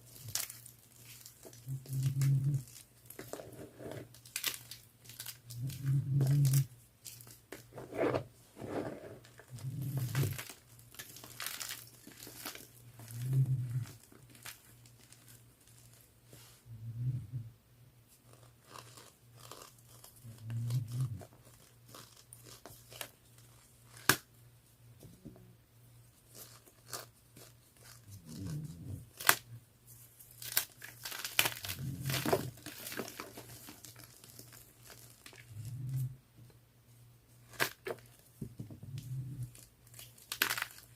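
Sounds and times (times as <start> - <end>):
chalk crunching: 18.1 - 24.2, 26.2 - 36.1.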